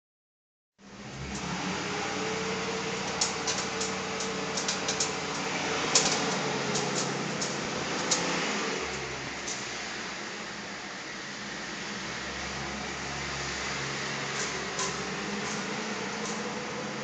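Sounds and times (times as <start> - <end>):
mechanical hum: 0.8 - 17.0.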